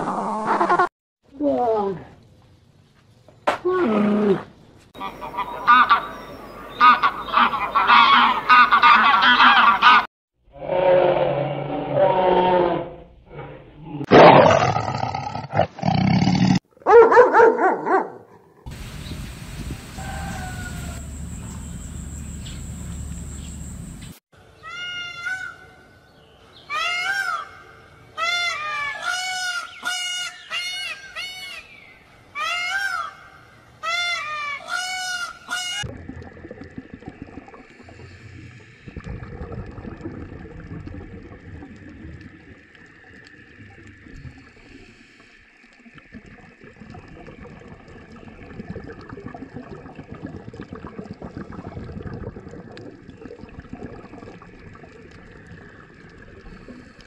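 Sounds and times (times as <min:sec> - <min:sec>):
geese honking: 0:05.0 - 0:06.1, 0:06.8 - 0:10.1.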